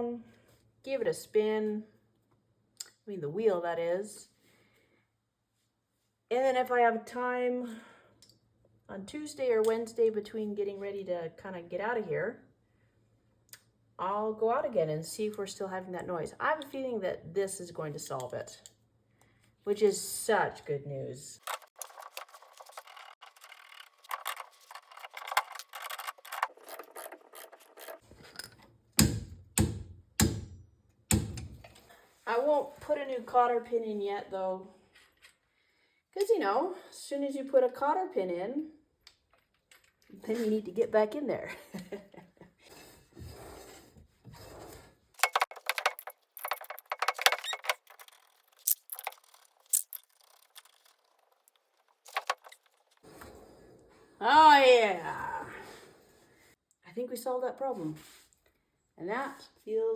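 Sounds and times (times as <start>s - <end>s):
metal tools clicking and jingling: 21.4s - 28.6s, 45.2s - 53.0s
ratchet wrench clicking: 45.2s - 51.5s.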